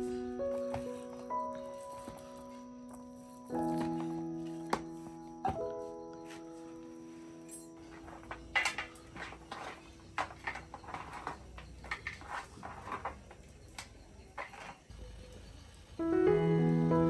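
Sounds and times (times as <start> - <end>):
utensils clinking against pots: 7.4 - 14.9.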